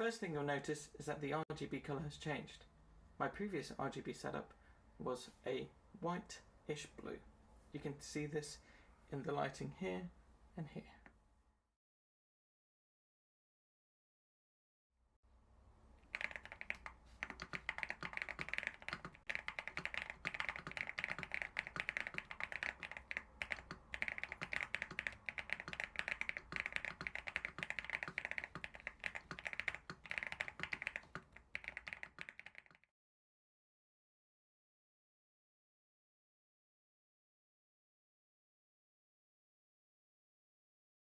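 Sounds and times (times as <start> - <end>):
mechanical keyboard typing: 16.0 - 32.9.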